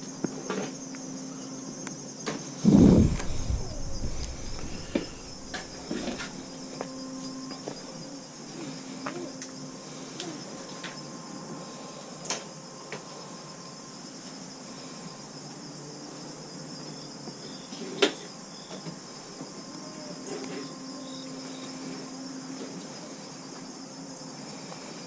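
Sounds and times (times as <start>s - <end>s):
insect chirring: 2.6s - 9.8s.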